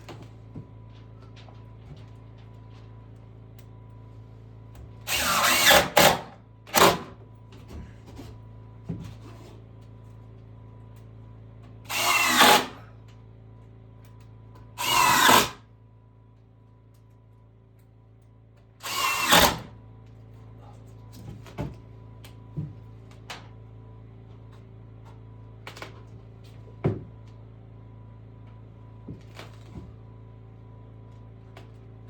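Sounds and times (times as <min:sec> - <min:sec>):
power drill bursts: 0:05.1 - 0:07.1, 0:11.9 - 0:12.8, 0:14.8 - 0:15.6, 0:18.8 - 0:19.7.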